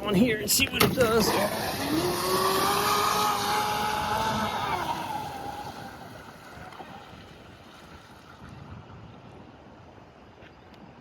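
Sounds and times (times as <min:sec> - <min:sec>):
model boat motor whine: 0:01.0 - 0:08.2
wind noise on microphone: 0:01.5 - 0:11.0.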